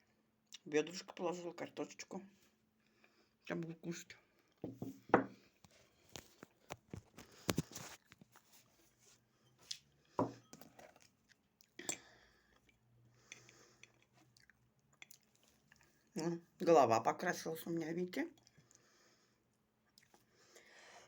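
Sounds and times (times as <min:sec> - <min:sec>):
person chewing and mouth noises: 0:12.5 - 0:16.1, 0:19.8 - 0:20.3.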